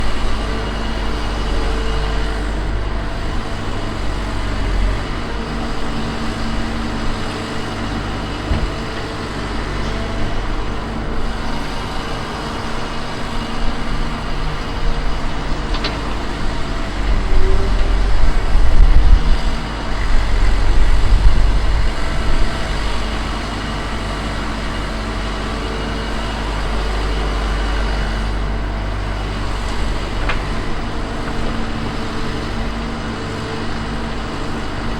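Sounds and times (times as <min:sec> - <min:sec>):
diesel machinery engine rumble: 0:00.0 - 0:34.9.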